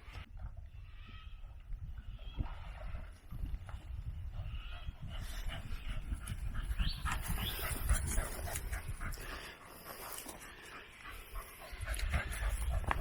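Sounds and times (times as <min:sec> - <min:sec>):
dog panting and whimpering: 0:05.0 - 0:13.0.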